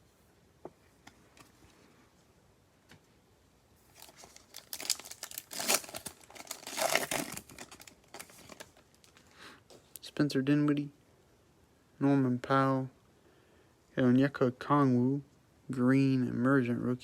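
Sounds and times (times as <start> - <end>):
wrapper tearing and crinkling: 3.9 - 9.2.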